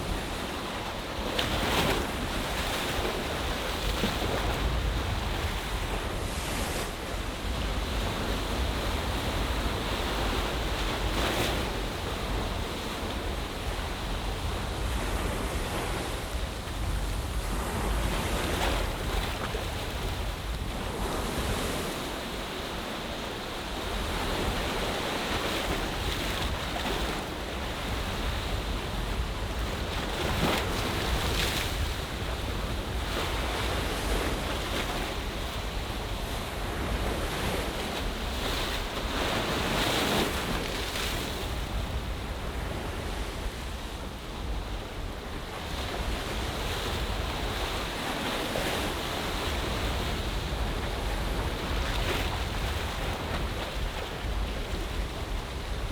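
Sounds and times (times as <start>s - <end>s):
wind rumble on microphone: 0.0s - 55.9s.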